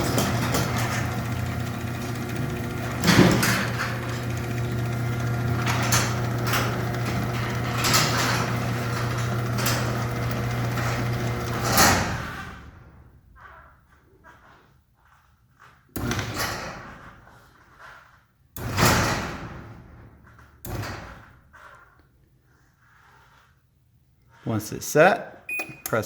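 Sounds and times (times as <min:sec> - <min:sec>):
garage door opener motor: 0:00.0 - 0:13.6, 0:16.0 - 0:17.1.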